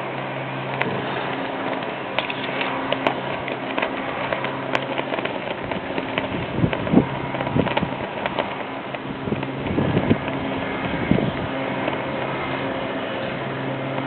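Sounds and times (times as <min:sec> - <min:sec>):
clicks and clacks: 0:00.0 - 0:14.0
machinery hum: 0:00.0 - 0:14.0.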